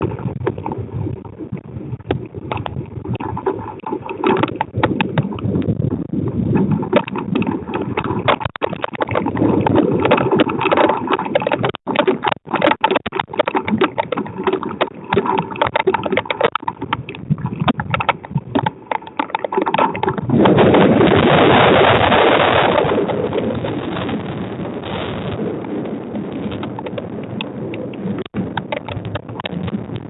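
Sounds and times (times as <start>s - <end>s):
wind and rain rushing: 0.0s - 30.0s
sharp clicks: 6.6s - 24.2s, 26.4s - 30.0s.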